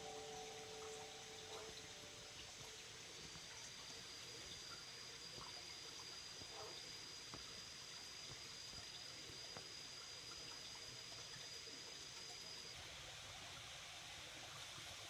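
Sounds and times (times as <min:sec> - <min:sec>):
high-pitched steady tone: 0:00.0 - 0:03.5
small ticks: 0:00.0 - 0:12.7
stream trickling: 0:00.0 - 0:15.0.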